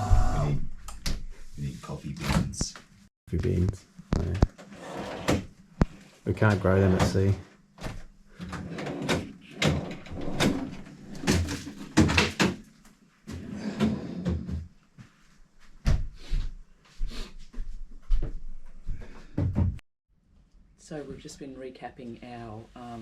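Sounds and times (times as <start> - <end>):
cupboard doors and utensils clattering: 6.7 - 12.7.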